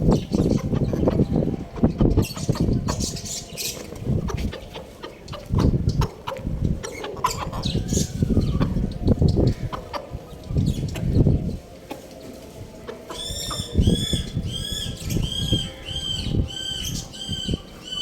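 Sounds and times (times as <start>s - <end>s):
chickens clucking: 0.0s - 18.0s
chicks peeping: 0.0s - 18.0s
low rumbling bursts: 5.5s - 11.8s.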